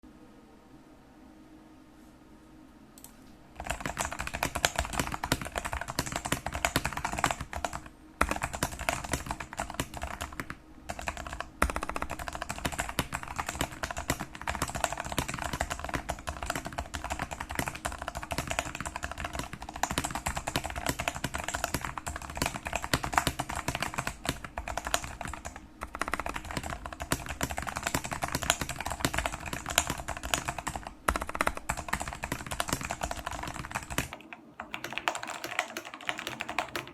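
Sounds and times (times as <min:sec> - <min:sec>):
mechanical keyboard typing: 0:03.0 - 0:36.9.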